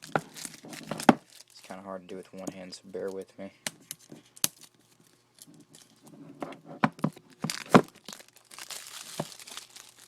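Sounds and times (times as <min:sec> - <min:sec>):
plastic wrap crinkling and tearing: 0:00.0 - 0:01.8, 0:07.3 - 0:10.0.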